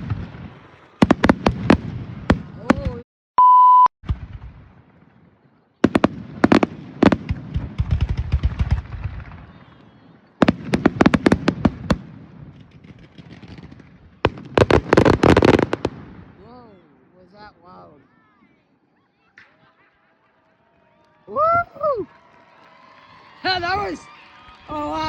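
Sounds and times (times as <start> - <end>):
fireworks bangs: 0.0 - 3.0, 4.0 - 16.5
fireworks crackling: 0.0 - 3.0, 4.1 - 16.5
short steady beep: 3.4 - 3.9.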